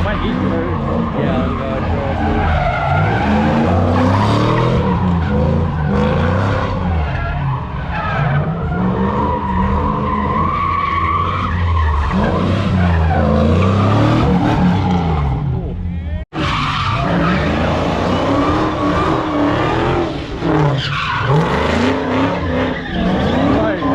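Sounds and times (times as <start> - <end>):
tyres squealing on pavement: 0.0 - 15.4, 16.3 - 23.9
car engine revving: 0.0 - 23.9.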